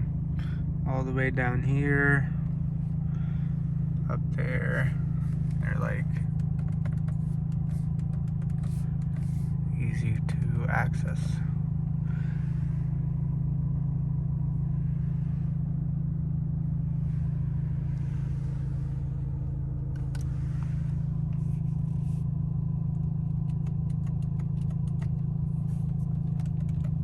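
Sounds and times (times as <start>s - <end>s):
car engine droning: 0.0s - 27.0s
light irregular clicks: 23.0s - 25.2s, 25.8s - 27.0s.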